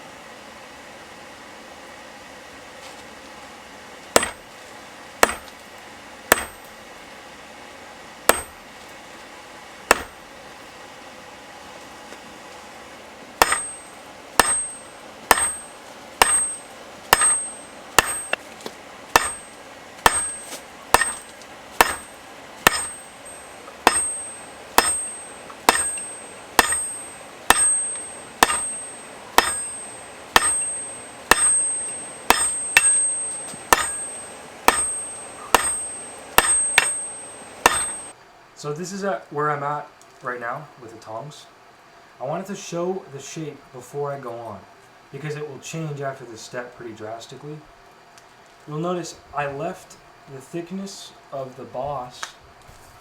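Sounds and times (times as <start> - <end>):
hammer striking metal on anvil: 4.2 - 4.4, 5.2 - 5.6, 6.3 - 6.7, 8.3 - 8.6, 9.9 - 10.2, 13.4 - 18.4, 19.1 - 38.1.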